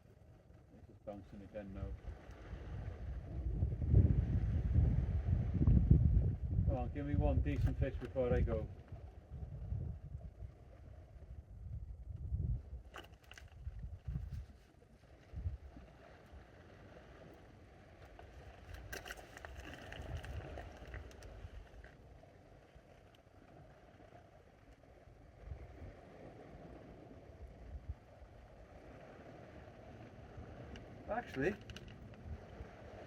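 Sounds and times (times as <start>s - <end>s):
wind gusting on microphone: 1.7s - 14.6s, 15.2s - 16.9s, 18.2s - 21.8s, 25.3s - 33.0s
sea waves washing: 23.6s - 33.0s.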